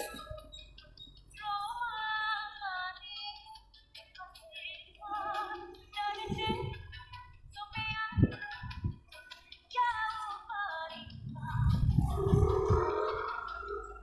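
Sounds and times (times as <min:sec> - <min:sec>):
background music: 0:00.0 - 0:14.0
woman singing with vibrato: 0:04.6 - 0:07.0, 0:09.7 - 0:14.0.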